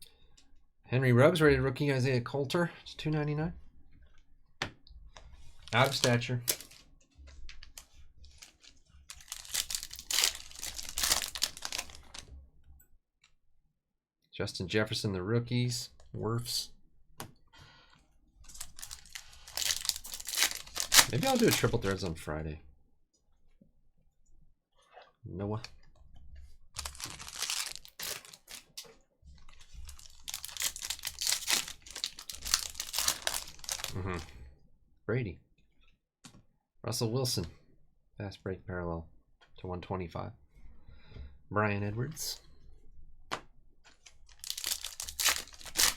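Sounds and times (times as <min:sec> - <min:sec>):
plastic wrappers crinkling and tearing: 0:05.4 - 0:12.3, 0:18.4 - 0:22.1, 0:26.7 - 0:34.2, 0:43.9 - 0:45.9
trading cards flipping: 0:05.6 - 0:06.9, 0:07.5 - 0:12.2, 0:18.6 - 0:21.9, 0:44.3 - 0:45.9.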